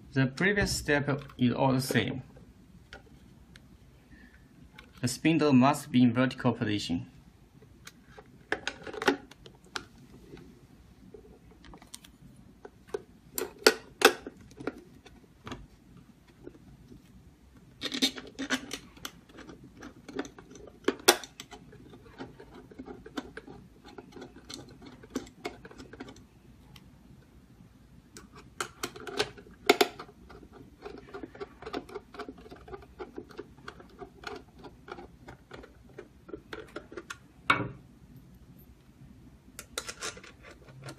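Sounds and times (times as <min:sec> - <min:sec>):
metal lock parts clicking: 0:17.8 - 0:26.2.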